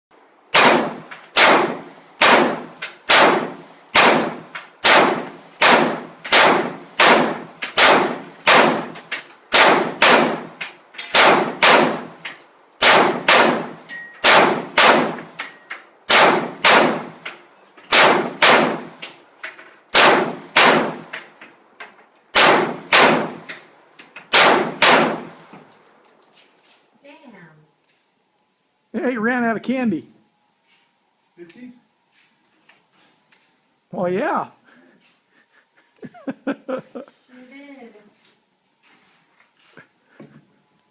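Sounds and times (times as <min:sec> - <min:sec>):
pistol shots with ringing tail: 0:00.5 - 0:12.2, 0:12.8 - 0:17.2, 0:17.9 - 0:19.0, 0:19.9 - 0:21.1, 0:22.3 - 0:23.5, 0:24.3 - 0:25.6.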